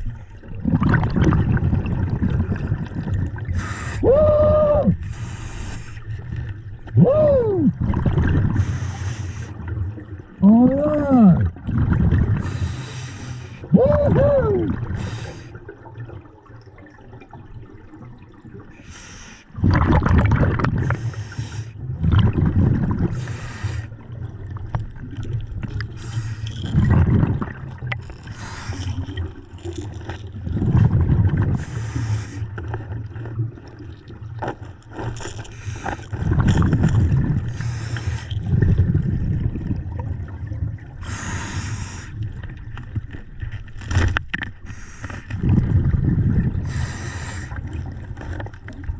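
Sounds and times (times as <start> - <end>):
gurgling exhaled bubbles: 0.0 - 48.9
hissing regulator breaths: 41.0 - 42.2, 46.7 - 47.6.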